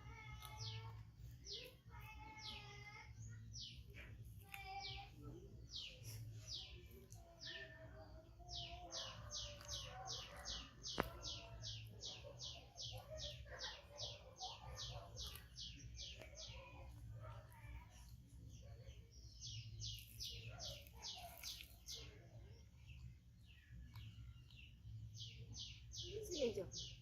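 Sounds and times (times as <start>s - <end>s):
bird chirping: 0.2s - 17.8s.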